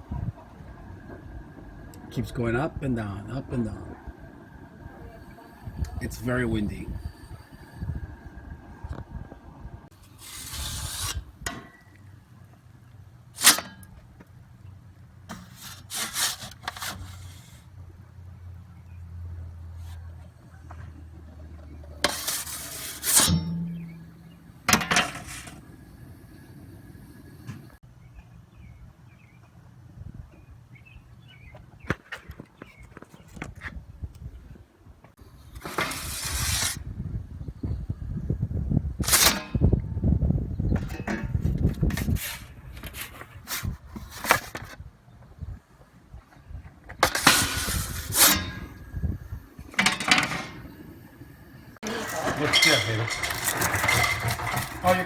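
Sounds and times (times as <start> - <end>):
wind buffeting microphone: 0.0 - 9.9, 29.9 - 49.8
short scraping sounds: 10.0 - 11.4, 15.3 - 17.7, 22.0 - 26.5, 35.4 - 36.9, 47.0 - 49.2, 51.8 - 55.0
steady low hum: 23.2 - 27.8.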